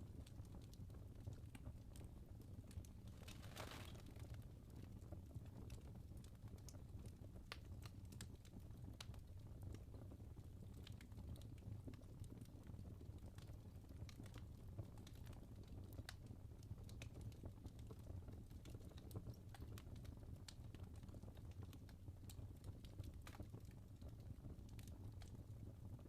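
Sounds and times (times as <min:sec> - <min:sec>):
low rumble of flames: 0:00.0 - 0:26.0
wood fire crackling: 0:00.0 - 0:26.0.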